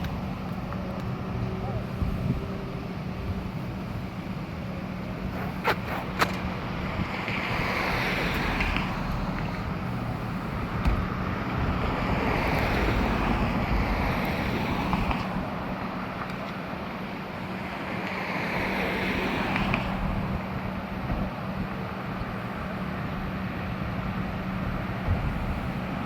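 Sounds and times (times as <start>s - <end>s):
road traffic passing: 0.0s - 26.0s
wind on microphone: 1.4s - 4.0s, 19.3s - 26.0s.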